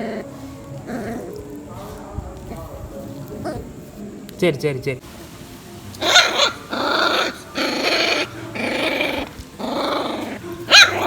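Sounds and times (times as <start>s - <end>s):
puppy growling: 0.0s - 3.9s, 6.0s - 11.0s
puppy yelping: 6.0s - 11.0s.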